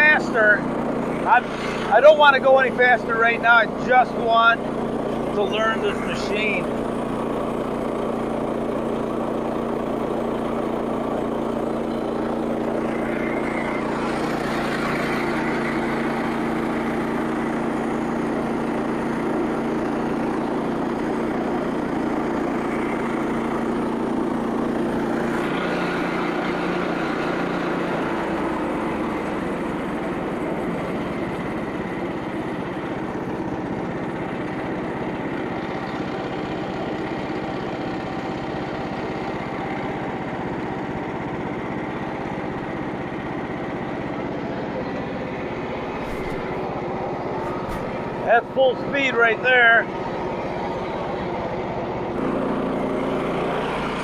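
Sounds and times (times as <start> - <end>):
band saw blade cutting log: 0.0 - 34.6, 45.2 - 49.5
small gasoline engine running: 0.0 - 54.0.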